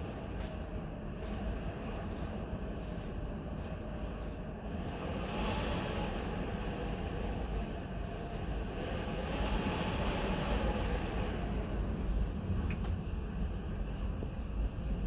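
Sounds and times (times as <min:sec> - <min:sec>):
strong wind blowing in gusts: 0:03.8 - 0:15.0.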